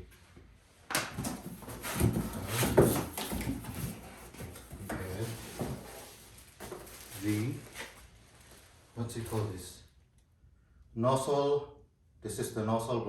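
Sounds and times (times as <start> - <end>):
plastic bags rustling: 1.4 - 9.7.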